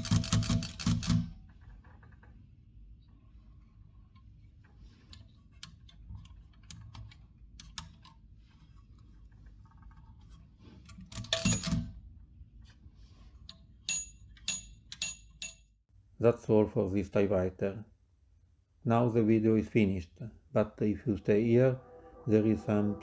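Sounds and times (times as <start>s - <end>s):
typewriter mechanical clatter: 0.0s - 1.2s
typewriter ticks and clicks: 0.0s - 1.2s
typewriter margin bell ringing: 11.4s - 11.8s, 13.9s - 15.6s.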